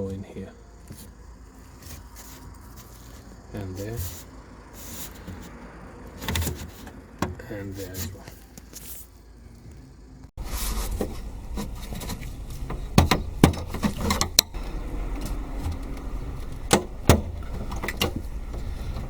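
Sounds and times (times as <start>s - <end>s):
low rumble: 10.4s - 19.0s.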